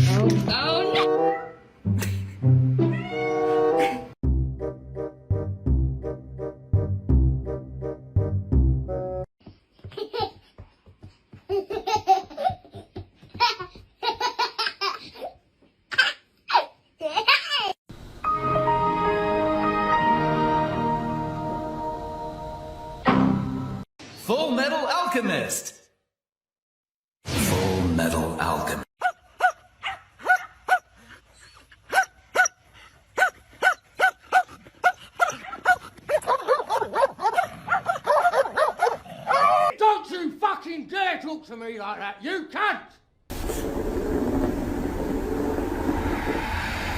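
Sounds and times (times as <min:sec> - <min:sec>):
dog barking: 0:29.0 - 0:30.9, 0:31.9 - 0:32.6, 0:33.2 - 0:39.7.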